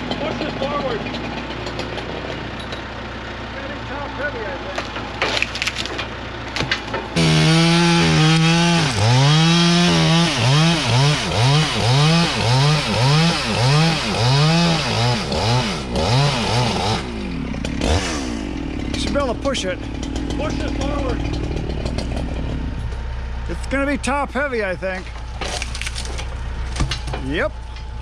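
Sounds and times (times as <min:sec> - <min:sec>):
chainsaw revving: 0:00.0 - 0:02.2, 0:07.2 - 0:22.8.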